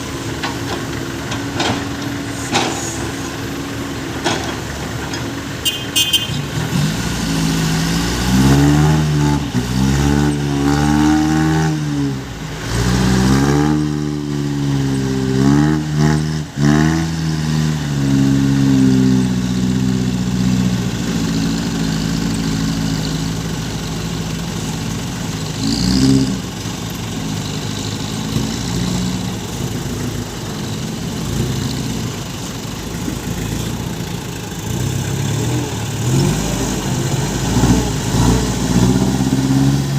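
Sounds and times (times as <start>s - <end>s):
truck engine revving and idling: 0.0s - 39.9s.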